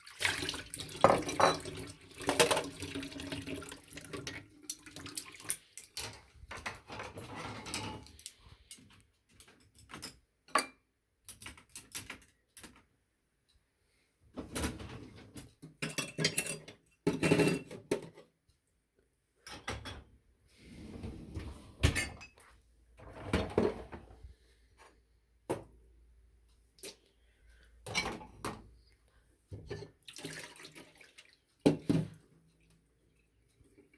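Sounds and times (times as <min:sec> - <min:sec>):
clattering and rustling: 0:05.9 - 0:10.2
crockery and utensils clinking: 0:15.8 - 0:17.8.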